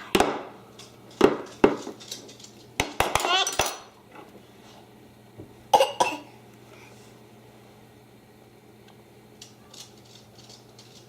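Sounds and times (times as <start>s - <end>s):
dishes and cutlery clinking: 0.8s - 4.0s.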